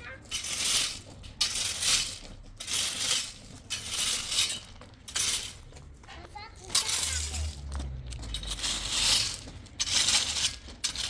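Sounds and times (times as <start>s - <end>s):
scratchy scraping strokes: 8.4s - 11.0s.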